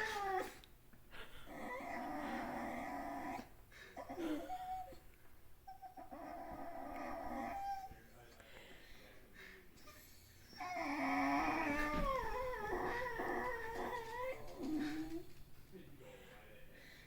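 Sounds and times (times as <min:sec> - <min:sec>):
puppy whining: 0:00.0 - 0:00.6, 0:01.5 - 0:08.2, 0:09.8 - 0:15.4.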